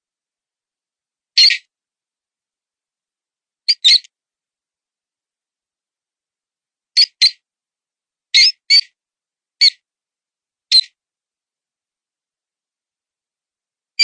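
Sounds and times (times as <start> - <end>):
high mouse squeaks: 3.7 - 4.1.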